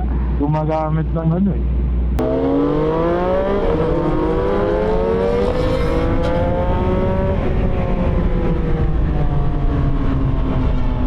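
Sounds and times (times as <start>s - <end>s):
motorcycle engine accelerating: 2.2s - 11.0s.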